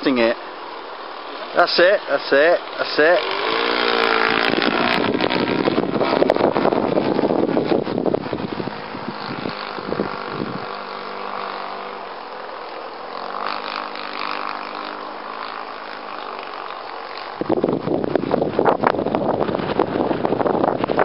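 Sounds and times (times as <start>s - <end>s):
model aircraft motor buzzing: 0.0s - 21.0s
wind buffeting microphone: 2.6s - 21.0s.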